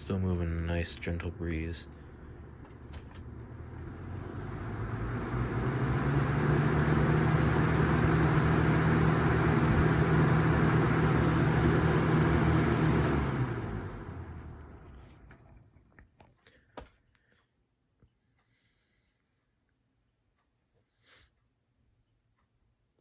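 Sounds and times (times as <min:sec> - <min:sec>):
fan blades rushing air: 0:00.0 - 0:15.3
box fan motor hum: 0:00.0 - 0:15.4.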